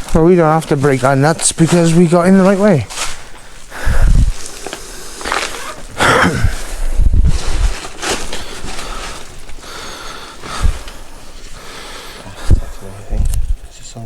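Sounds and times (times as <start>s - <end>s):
footsteps on cluttered ground: 0.0s - 13.5s.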